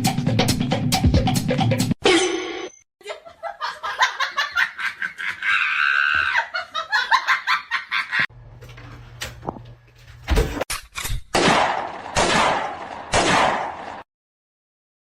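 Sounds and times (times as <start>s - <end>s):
people laughing: 3.0s - 8.3s.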